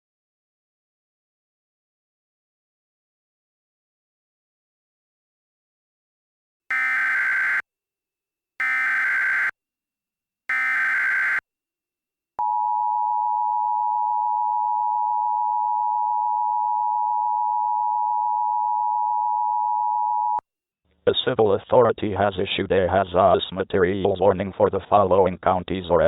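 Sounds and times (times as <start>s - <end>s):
two-tone alarm signal: 6.7s - 7.6s, 8.6s - 9.5s, 10.5s - 11.4s
digital data tone bursts: 10.5s - 11.4s.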